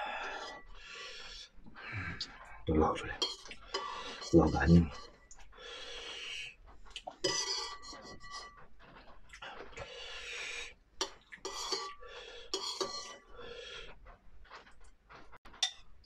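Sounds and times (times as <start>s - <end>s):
utensils scraping a bowl: 2.8s - 6.2s, 7.0s - 9.2s, 9.8s - 13.5s
noisy slurps and mouth sounds: 6.9s - 7.9s, 9.3s - 13.2s.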